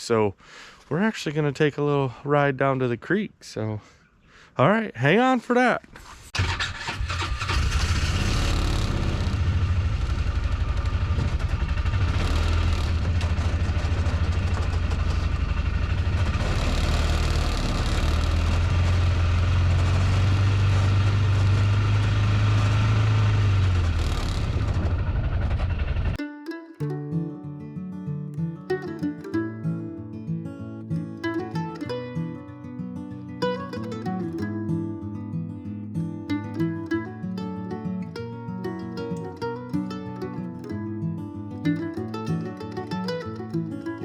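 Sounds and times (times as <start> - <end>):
vehicle engine running: 7.2 - 26.2.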